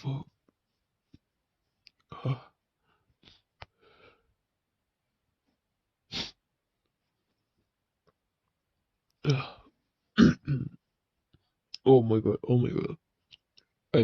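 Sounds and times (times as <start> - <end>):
person sneezing: 6.1 - 6.4
quick breath or sniff: 6.1 - 6.4.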